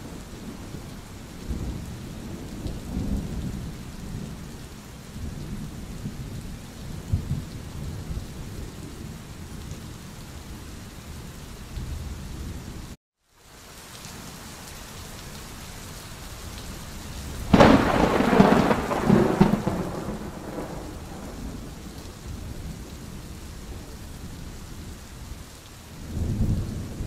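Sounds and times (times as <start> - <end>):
steady rain falling: 0.0 - 27.0
thunder crack and rumble: 17.5 - 23.9.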